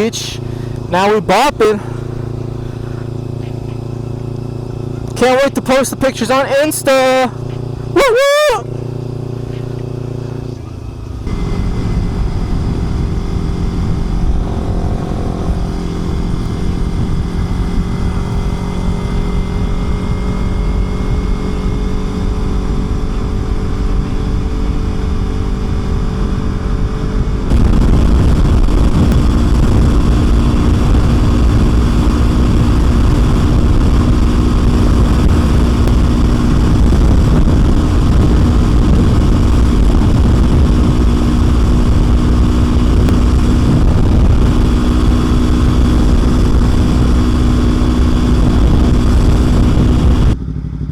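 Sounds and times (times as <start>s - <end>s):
motorcycle engine cruising: 0.0s - 50.9s
wind rushing: 11.3s - 18.1s.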